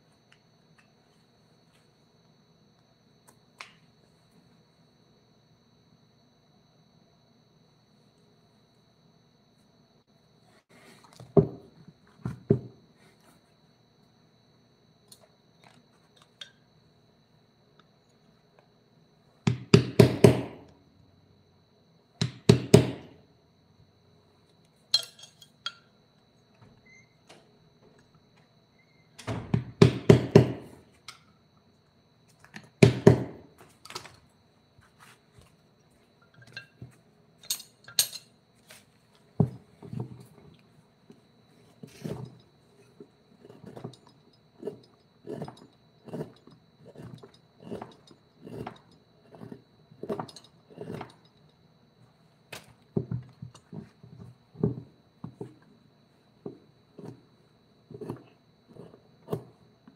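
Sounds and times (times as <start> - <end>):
tool knocking on wood: 11.4 - 12.7, 19.5 - 20.7, 22.2 - 23.2, 29.3 - 30.8, 32.8 - 33.5
faint high whine: 24.2 - 29.4.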